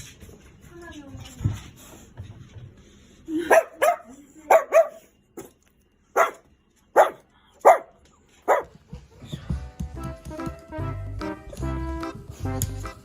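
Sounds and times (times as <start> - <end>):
dog barking: 3.4 - 5.1, 6.1 - 8.8.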